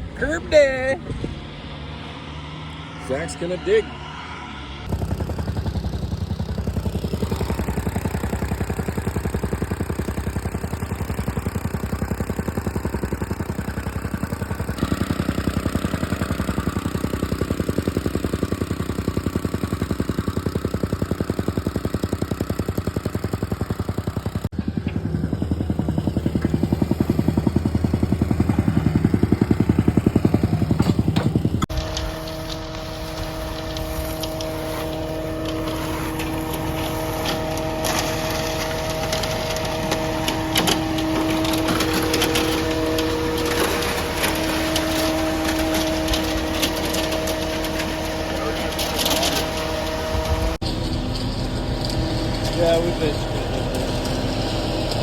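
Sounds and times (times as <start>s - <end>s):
diesel engine of digging machinery: 0.0s - 55.0s.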